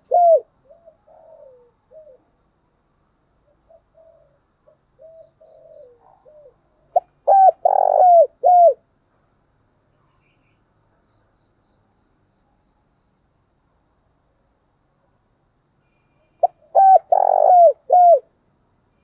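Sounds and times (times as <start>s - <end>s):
dove cooing: 0.0s - 2.4s, 3.5s - 8.8s, 16.4s - 18.3s.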